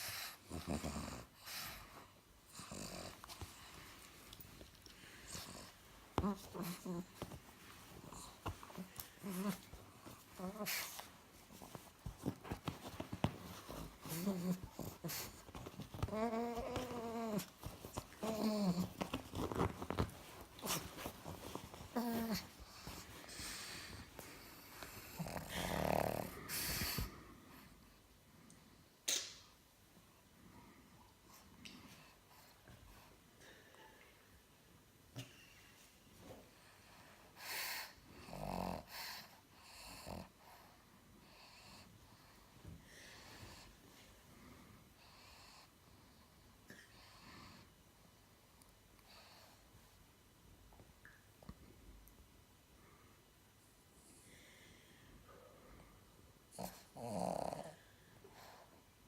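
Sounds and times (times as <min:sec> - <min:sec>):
dog snoring: 0:00.0 - 0:01.8, 0:02.5 - 0:03.4, 0:13.5 - 0:20.8, 0:24.6 - 0:27.1, 0:38.2 - 0:40.6, 0:56.5 - 0:57.8
soft hissing breaths: 0:00.0 - 0:33.3.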